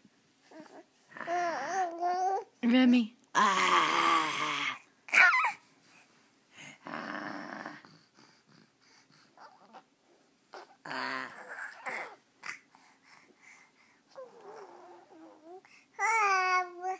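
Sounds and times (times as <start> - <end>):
baby growling and squealing: 3.4 - 5.6, 10.8 - 12.6.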